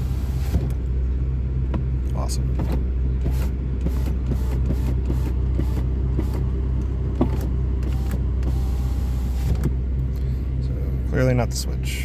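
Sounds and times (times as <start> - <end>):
power window motor running: 0.0 - 0.9, 2.5 - 10.0
steady low hum: 0.0 - 12.0.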